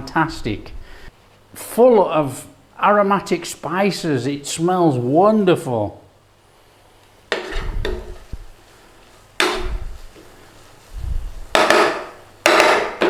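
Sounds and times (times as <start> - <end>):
sizzling in a pan: 6.2 - 13.0
utensil knocking and scraping pan: 7.3 - 8.4, 9.4 - 10.3, 11.4 - 13.0.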